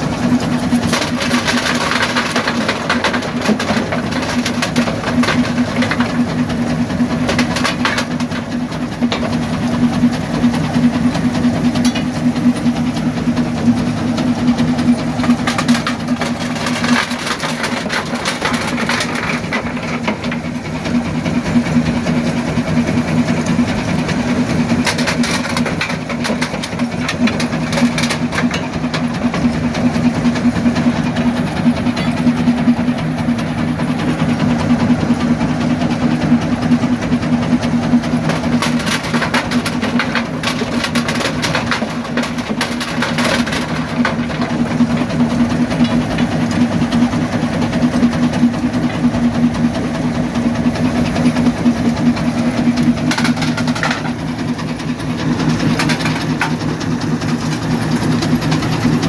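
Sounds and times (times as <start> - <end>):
rock crusher droning: 0.0 - 59.0
rocks cracking and clattering: 52.2 - 59.0.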